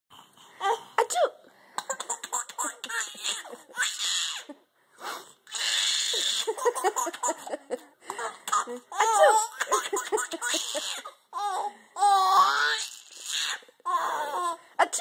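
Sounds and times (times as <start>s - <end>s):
baby giggling and laughing: 1.8s - 4.6s, 5.5s - 14.6s.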